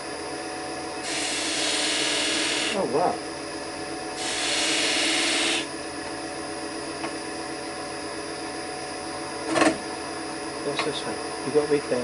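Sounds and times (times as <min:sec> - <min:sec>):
wood lathe humming: 0:00.8 - 0:08.0
lathe knife cutting wood: 0:01.0 - 0:02.9, 0:04.2 - 0:05.7.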